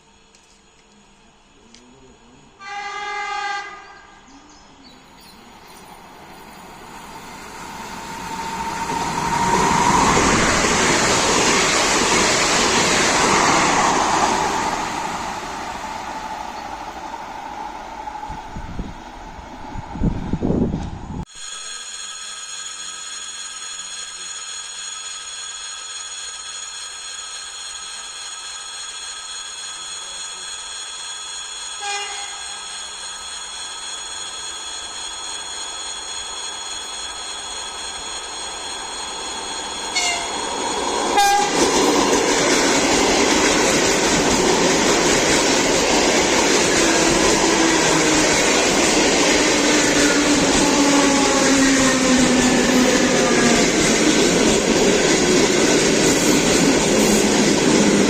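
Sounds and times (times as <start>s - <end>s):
train high whine: 0.0s - 58.0s
train wheel and running noise: 0.0s - 58.0s
train horn toots: 2.6s - 4.2s, 31.8s - 32.6s, 39.9s - 40.4s, 41.1s - 41.8s.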